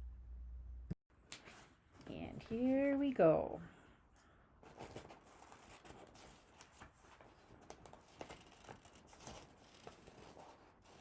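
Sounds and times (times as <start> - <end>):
paper rustling: 4.6 - 11.0.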